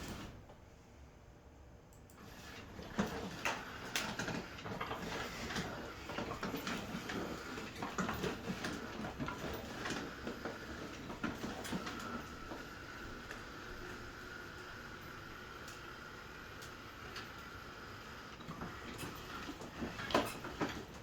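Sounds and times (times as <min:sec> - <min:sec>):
robot vacuum motors rattling: 0:02.2 - 0:21.0.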